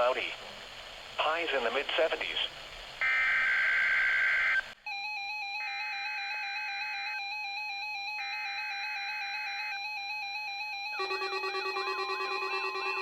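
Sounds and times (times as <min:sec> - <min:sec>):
buzzy electronic alert tone: 0:11.0 - 0:13.0
chirpy two-pitch data tones: 0:11.0 - 0:13.0.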